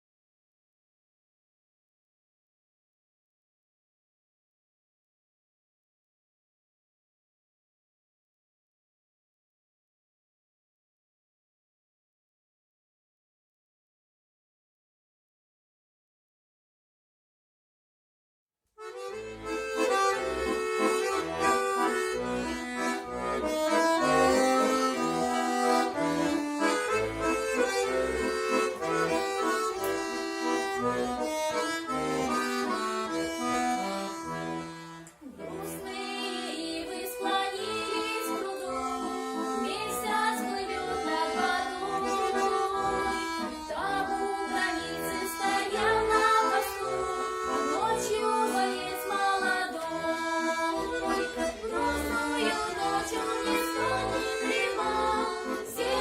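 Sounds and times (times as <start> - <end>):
accordion melody: 18.8 - 56.0.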